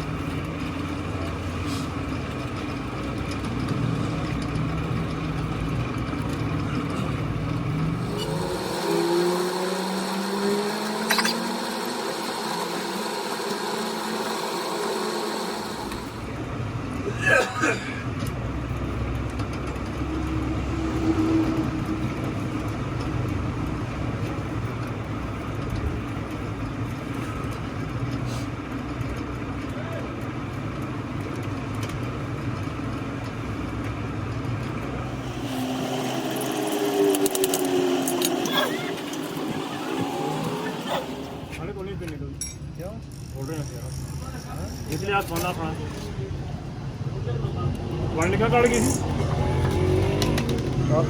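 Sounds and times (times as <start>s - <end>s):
high motor whine: 0.0s - 28.6s, 34.5s - 41.8s
engine rumbling: 0.0s - 51.0s.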